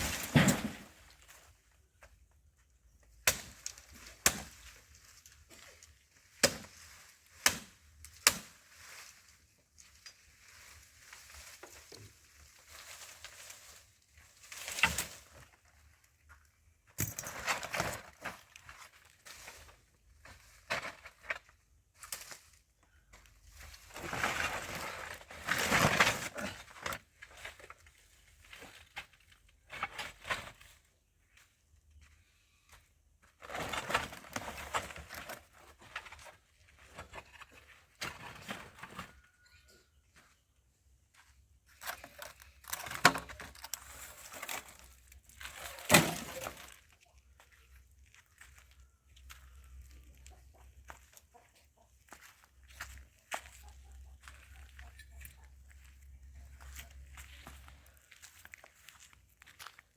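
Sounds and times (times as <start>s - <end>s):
wood crunching and breaking: 41.7s - 47.0s.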